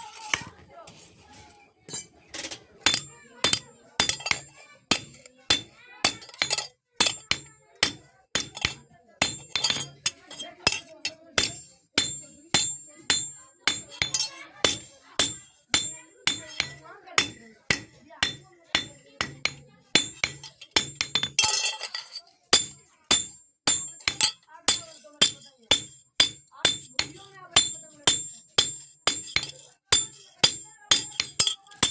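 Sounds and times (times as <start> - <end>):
hammer striking steel on anvil: 2.8 - 31.9.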